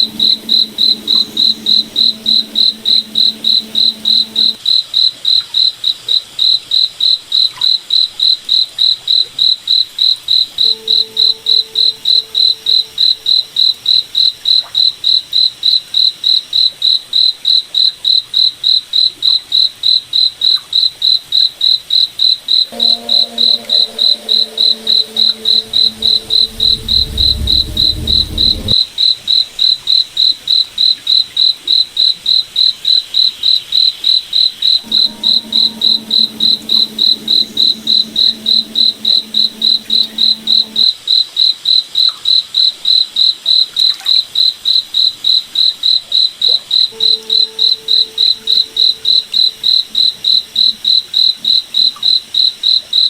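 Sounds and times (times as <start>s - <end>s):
cricket chirping: 0.0s - 4.6s, 22.5s - 28.8s, 34.0s - 40.9s.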